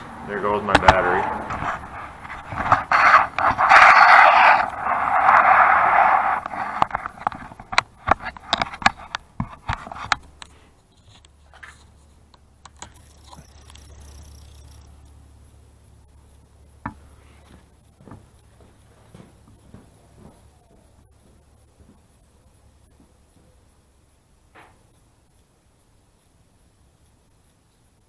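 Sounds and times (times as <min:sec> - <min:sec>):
sharp clicks and knocks: 0:00.6 - 0:10.5.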